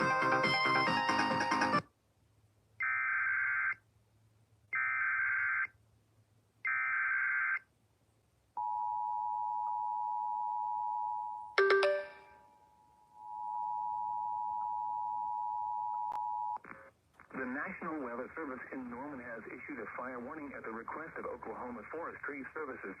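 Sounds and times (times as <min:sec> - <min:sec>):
music: 0:00.0 - 0:01.8.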